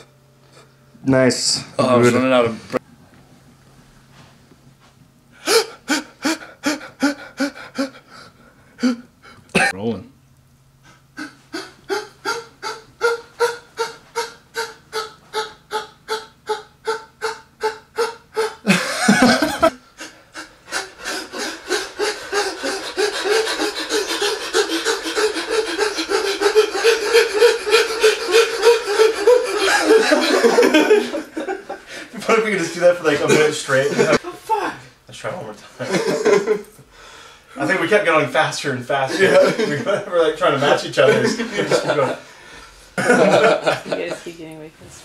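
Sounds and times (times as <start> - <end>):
men panting rhythmically: 5.4 - 9.5, 10.8 - 32.2, 36.1 - 37.6, 40.6 - 44.2
loud breathy burst: 36.9 - 37.6.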